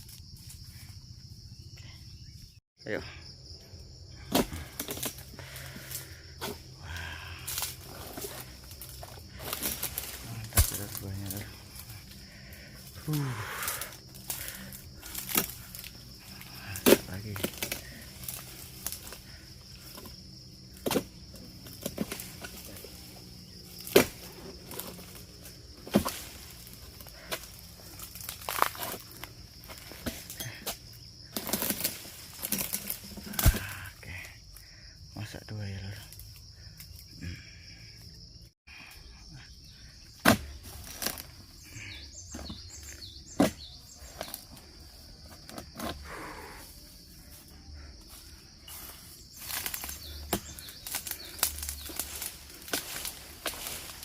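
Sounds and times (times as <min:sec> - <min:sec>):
faint insect buzz: 0:00.0 - 0:54.0
sharp knocks of harvesting: 0:09.4 - 0:11.4, 0:16.7 - 0:19.0, 0:23.7 - 0:24.9, 0:25.8 - 0:26.5, 0:29.8 - 0:33.9, 0:40.2 - 0:41.2, 0:43.3 - 0:44.4.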